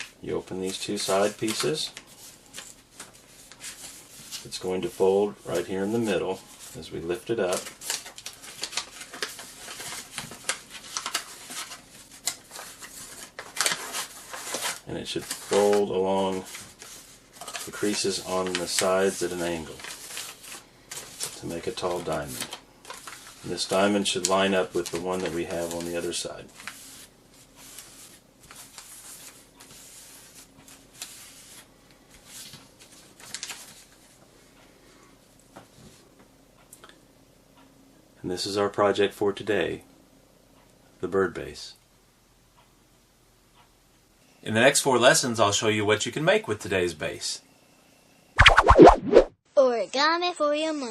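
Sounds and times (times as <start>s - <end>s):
paper creasing crackles: 0.0s - 34.2s
paper rustling and crinkling: 0.0s - 34.2s.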